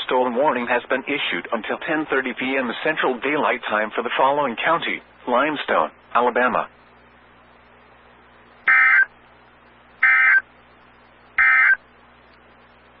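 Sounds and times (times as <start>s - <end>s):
harsh digital warbling bursts: 10.0s - 10.4s, 11.4s - 11.8s.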